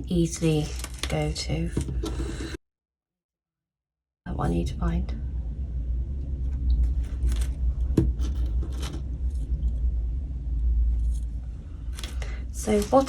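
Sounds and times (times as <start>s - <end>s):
steady low hum: 4.3s - 13.0s.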